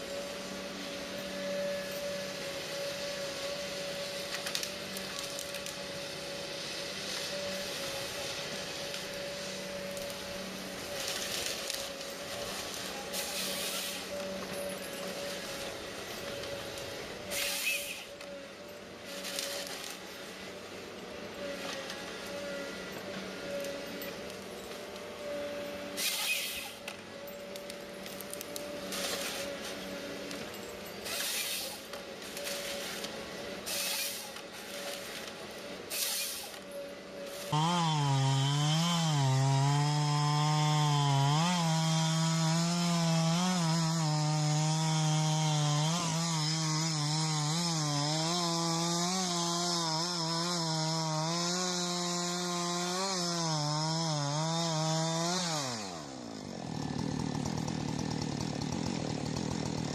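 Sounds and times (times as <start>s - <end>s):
chainsaw running at high revs: 0.0s - 20.4s, 21.3s - 59.9s
short bursts of hiss: 33.7s - 34.2s.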